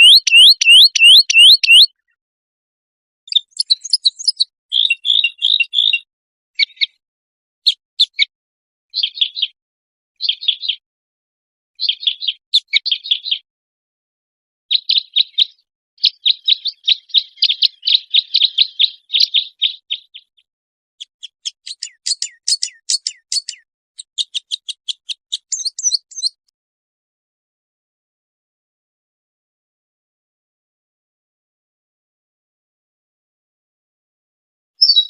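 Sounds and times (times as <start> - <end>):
songbird chirping and trilling: 0.0 - 2.2, 3.3 - 7.0, 7.6 - 8.3, 9.0 - 9.6, 10.2 - 10.8, 11.8 - 13.5, 14.7 - 26.5, 34.8 - 35.0.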